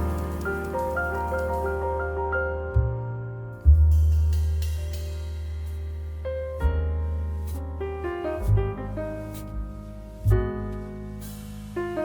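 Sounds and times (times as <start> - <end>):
soft drum hit and cymbal: 0.0 - 1.9, 3.6 - 12.0
piano chords: 0.0 - 12.0
deep bass note: 2.7 - 12.0.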